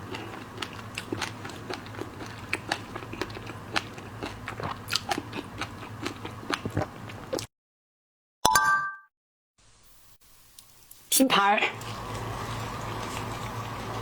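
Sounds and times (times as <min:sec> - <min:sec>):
crisp eating crunches: 0:00.0 - 0:07.5
wet chewing clicks: 0:00.1 - 0:07.5.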